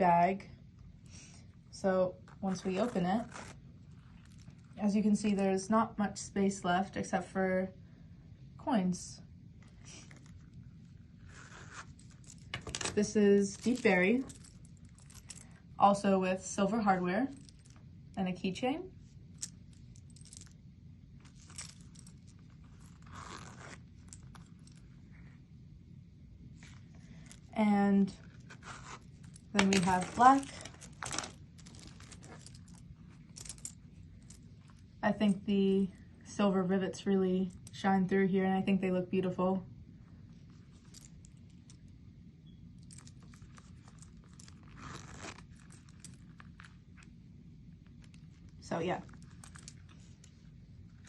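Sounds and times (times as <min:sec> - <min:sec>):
leather pouch clicks and rustles: 0:02.2 - 0:04.8, 0:09.6 - 0:15.7, 0:17.3 - 0:17.9, 0:21.2 - 0:25.0, 0:26.6 - 0:27.5, 0:28.2 - 0:34.9, 0:40.4 - 0:41.9, 0:42.8 - 0:47.2, 0:47.8 - 0:51.0
scraping rustle: 0:26.6 - 0:34.8.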